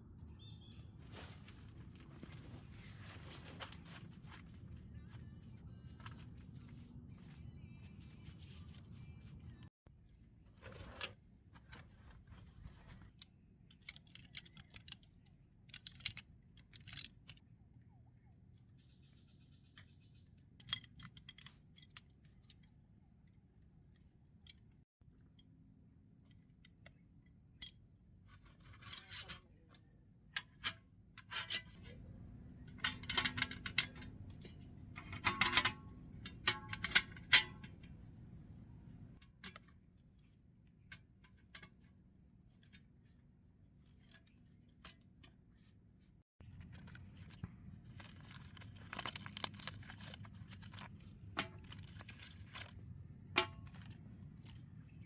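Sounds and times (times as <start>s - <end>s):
objects clicking and clattering: 10.6s - 17.5s, 27.6s - 39.9s, 46.4s - 55.0s.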